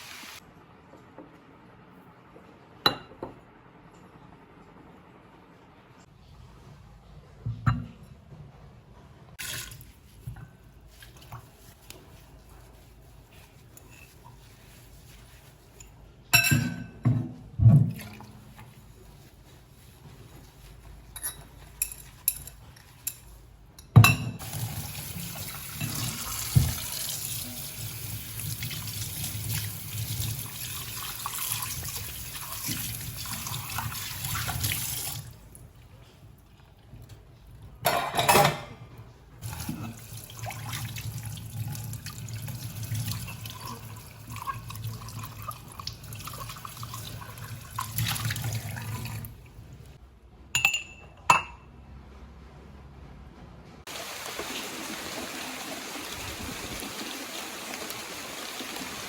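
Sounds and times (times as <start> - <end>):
tap water running into sink: 24.4 - 35.3, 53.9 - 59.0.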